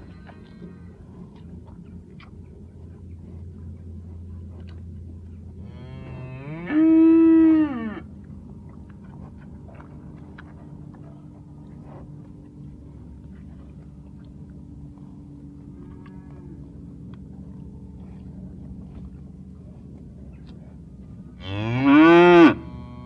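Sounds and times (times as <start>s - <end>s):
low hum: 0.0s - 23.0s
cow mooing: 5.6s - 8.0s, 21.4s - 23.0s.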